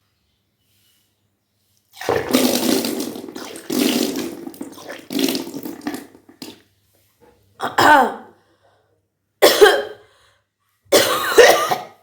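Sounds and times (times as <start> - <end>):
water splashing: 2.0 - 6.6
person vomiting water: 2.0 - 6.7.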